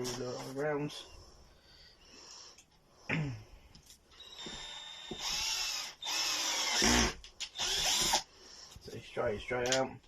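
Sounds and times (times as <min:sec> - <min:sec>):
cordless drill driving screw: 0:04.2 - 0:08.3.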